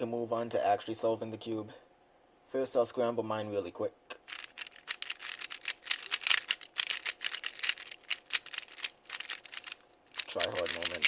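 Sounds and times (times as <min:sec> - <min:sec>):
plastic puzzle cube clicking: 0:04.3 - 0:11.0.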